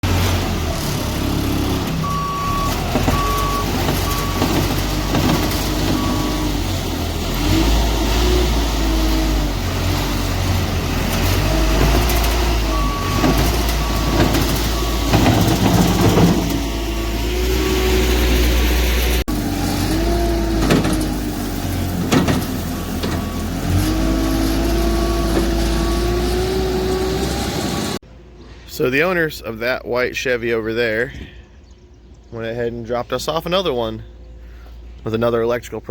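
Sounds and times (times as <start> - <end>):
diesel vehicle engine: 0.0 - 29.6
backup alarm beeps: 2.0 - 4.8, 5.9 - 6.4, 12.3 - 16.0.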